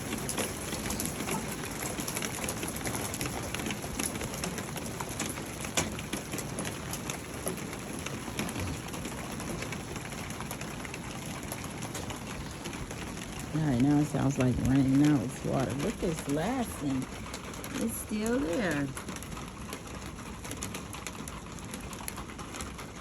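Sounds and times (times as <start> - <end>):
hail pelting a metal roof: 0.0 - 23.0.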